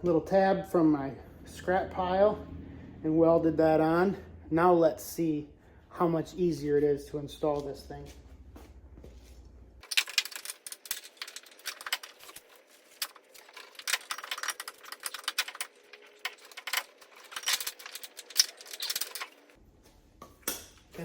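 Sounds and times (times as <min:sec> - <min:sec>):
metallic clinking of bolt and tools: 0:09.8 - 0:19.6.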